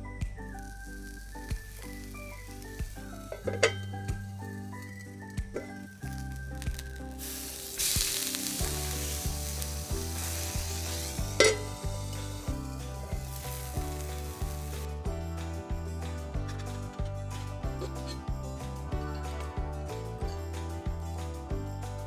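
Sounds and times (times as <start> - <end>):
background music with bass line: 0.0 - 22.0
food sizzling in a pan: 0.4 - 14.9
sharp clink: 1.8 - 5.0.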